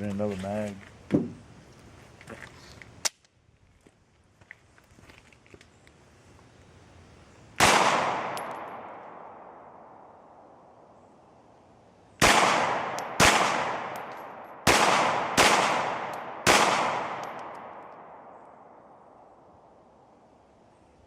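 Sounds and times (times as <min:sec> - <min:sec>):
pistol shots: 0:07.6 - 0:09.6, 0:12.2 - 0:18.8
gunshot echo: 0:07.6 - 0:09.8, 0:12.2 - 0:18.8.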